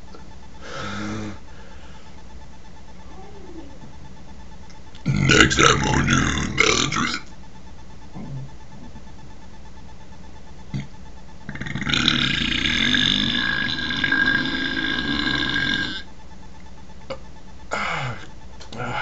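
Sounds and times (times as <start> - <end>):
man belching: 10.7 - 10.9, 11.5 - 16.0.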